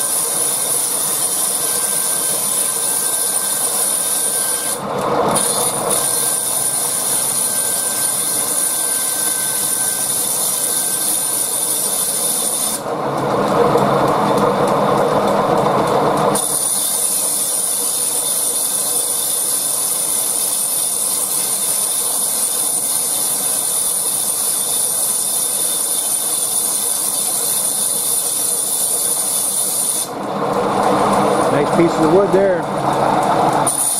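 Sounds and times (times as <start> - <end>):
bandsaw running: 0.0 - 12.9, 16.2 - 30.2, 33.6 - 33.9.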